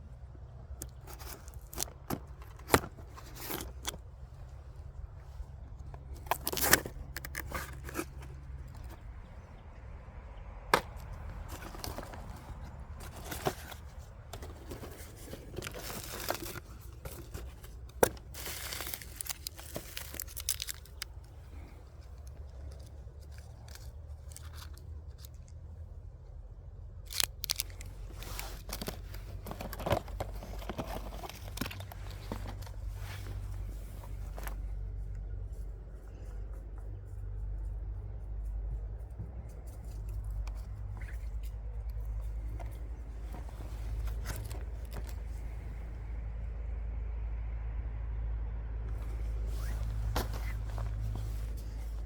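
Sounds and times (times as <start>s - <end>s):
packaging tearing and crinkling: 6.2s - 8.4s, 14.7s - 21.3s, 27.1s - 32.8s.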